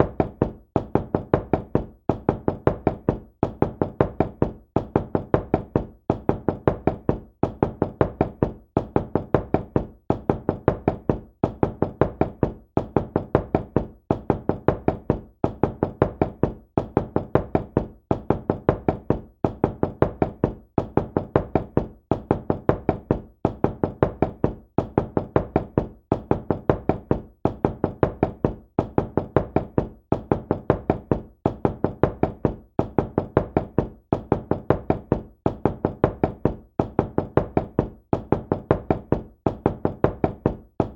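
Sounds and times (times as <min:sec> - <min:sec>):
knocking on a door: 0:00.0 - 0:40.9.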